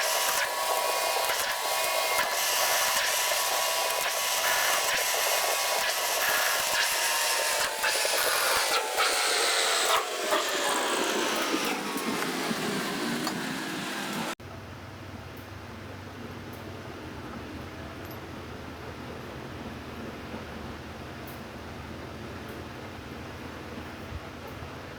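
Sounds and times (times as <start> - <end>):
power tool motor whining: 0.0 - 14.4.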